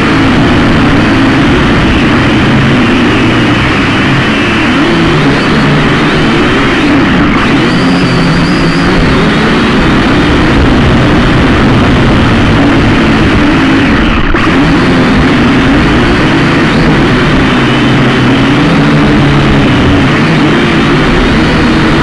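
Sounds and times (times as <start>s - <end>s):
drone propellers humming: 0.0s - 22.0s
steady rushing noise: 0.0s - 22.0s.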